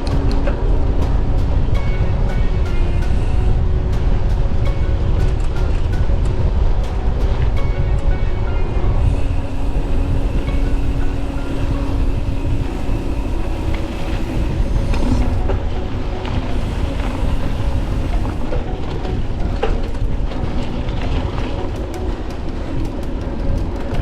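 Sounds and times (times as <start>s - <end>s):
wind rumbling on microphone: 0.0s - 24.0s
bike clicks and rattles: 9.0s - 24.0s.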